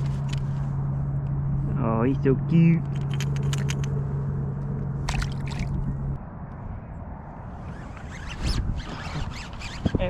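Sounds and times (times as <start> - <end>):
low hum: 0.0 - 9.8
water sloshing and splashing: 5.0 - 6.0.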